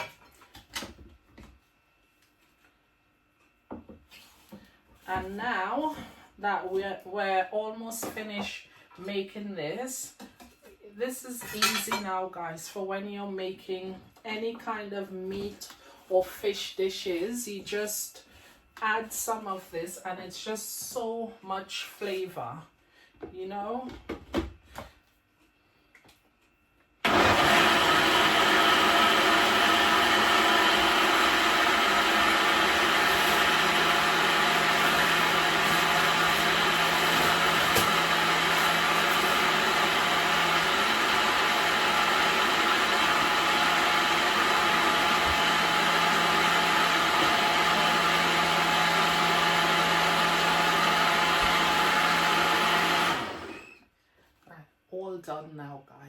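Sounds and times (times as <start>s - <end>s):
blender motor winding down: 27.0s - 53.8s
electric blender running: 27.0s - 53.8s.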